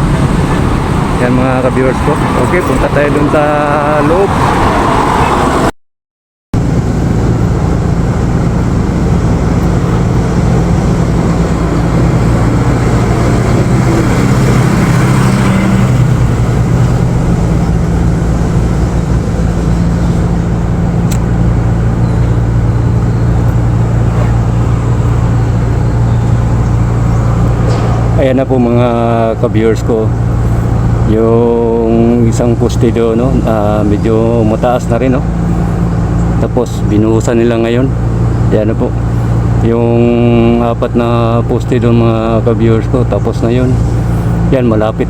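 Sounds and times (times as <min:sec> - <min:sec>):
low rumble: 0:00.0 - 0:04.3, 0:06.6 - 0:36.4
vehicle engine running: 0:00.0 - 0:04.5, 0:06.6 - 0:45.0.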